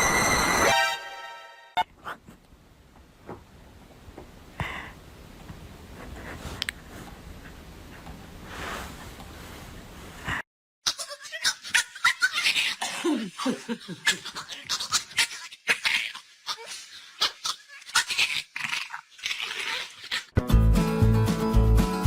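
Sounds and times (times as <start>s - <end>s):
people laughing: 12.9s - 14.4s.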